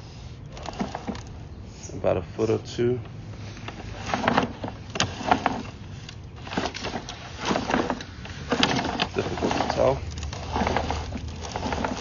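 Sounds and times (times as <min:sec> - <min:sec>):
cable clicks and knocks: 0:03.0 - 0:12.0.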